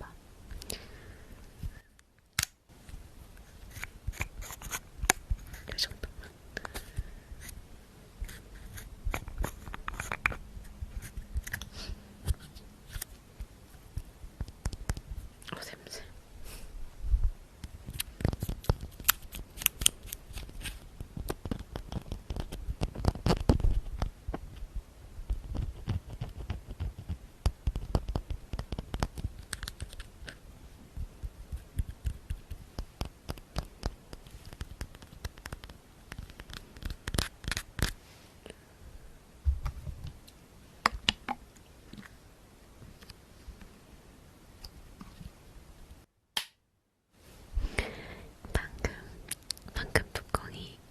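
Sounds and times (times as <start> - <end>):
sharp tapping and scratching: 8.2 - 11.7, 12.3 - 15.7, 17.9 - 24.4, 25.3 - 30.4, 31.2 - 38.0.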